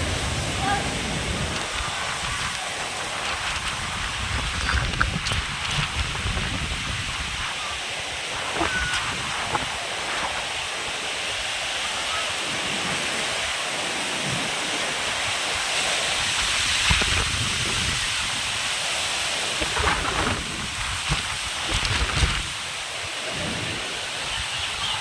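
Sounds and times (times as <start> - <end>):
heavy rain pouring: 0.0 - 25.0.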